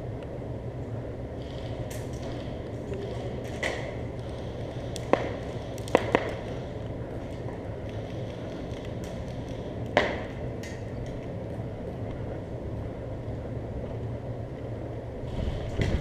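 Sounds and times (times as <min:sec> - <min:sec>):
low rumble: 0:00.0 - 0:16.0
sharp crack: 0:01.4 - 0:11.3.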